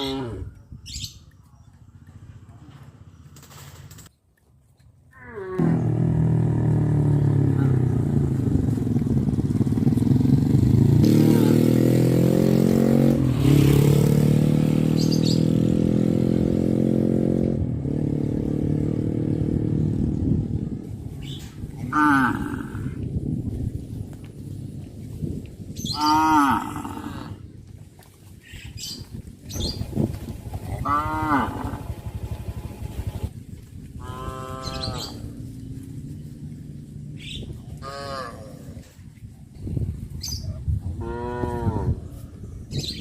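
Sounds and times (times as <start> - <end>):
cattle mooing: 21.8 - 23.0, 26.0 - 27.4, 30.8 - 32.0, 37.8 - 38.7.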